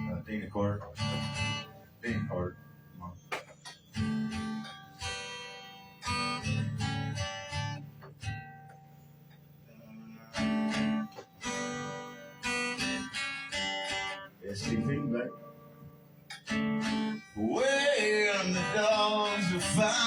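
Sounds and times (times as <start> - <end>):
acoustic guitar strumming: 0.0 - 20.0.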